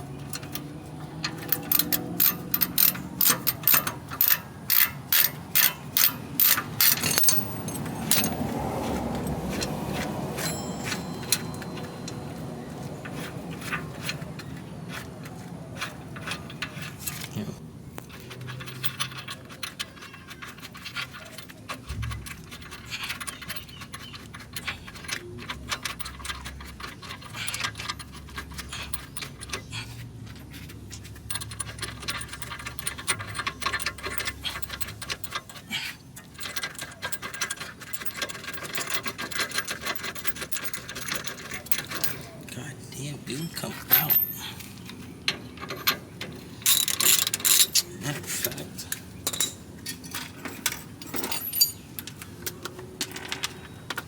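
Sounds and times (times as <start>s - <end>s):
hand ratchet clicking: 1.2s - 8.5s, 46.6s - 47.9s.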